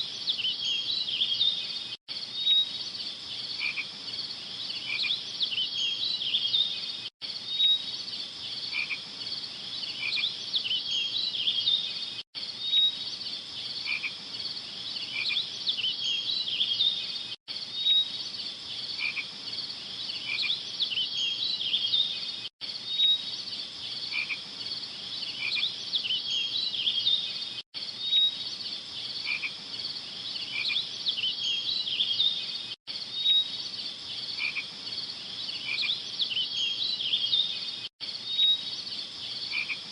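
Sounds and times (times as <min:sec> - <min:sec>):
small animals chirping in chorus: 0:25.2 - 0:27.4.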